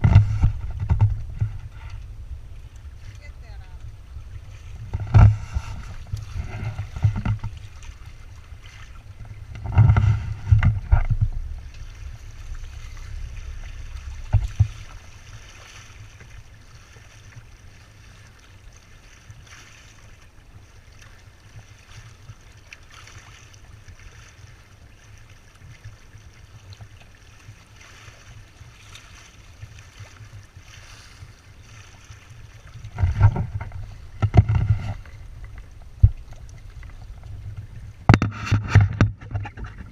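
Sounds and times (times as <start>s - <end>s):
wind buffeting microphone: 0.0s - 17.5s, 32.4s - 39.9s
water hissing along boat hulls: 0.0s - 39.9s.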